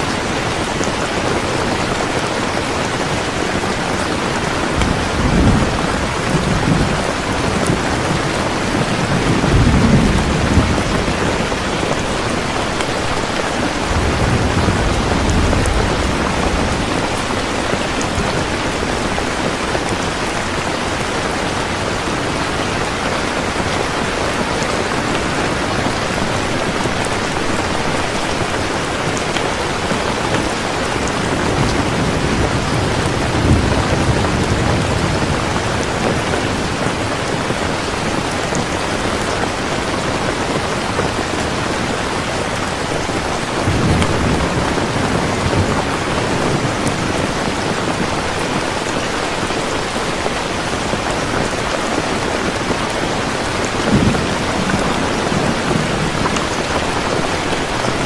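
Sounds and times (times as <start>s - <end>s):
heavy rain pouring: 0.0s - 58.0s
thunder rolling: 4.4s - 24.2s, 29.8s - 37.6s, 42.8s - 48.7s.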